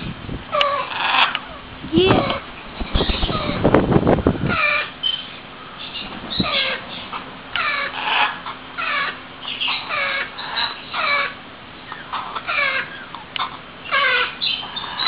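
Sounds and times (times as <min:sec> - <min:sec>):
baby parrots calling: 0:00.6 - 0:03.7, 0:04.4 - 0:15.0.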